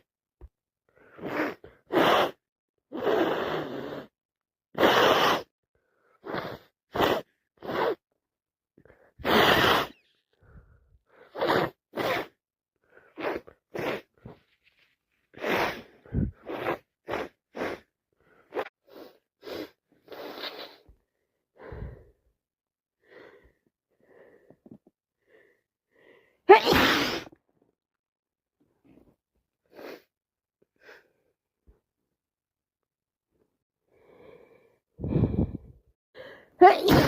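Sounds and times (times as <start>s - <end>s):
sniffs and breaths: 0.9s - 4.1s, 4.8s - 8.0s, 8.8s - 22.3s, 23.0s - 27.3s, 28.8s - 30.1s, 33.9s - 37.0s
person sneezing: 26.5s - 27.4s, 36.6s - 37.0s.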